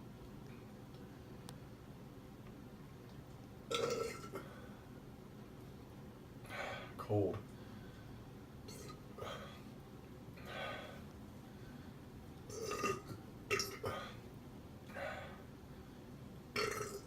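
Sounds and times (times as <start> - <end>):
man breathing: 6.4 - 8.4, 10.4 - 12.2, 14.9 - 16.2
man burping: 12.5 - 14.0, 16.6 - 17.0.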